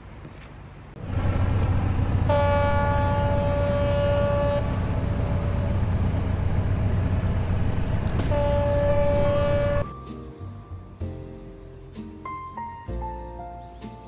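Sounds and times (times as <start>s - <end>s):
steady low rumble: 1.0s - 9.9s
horn-like tone: 2.3s - 4.8s, 8.2s - 10.0s.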